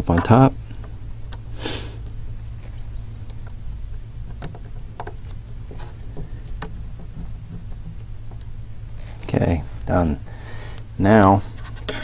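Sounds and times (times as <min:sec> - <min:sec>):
steady low hum: 0:00.0 - 0:12.0
short hiss: 0:01.5 - 0:02.0.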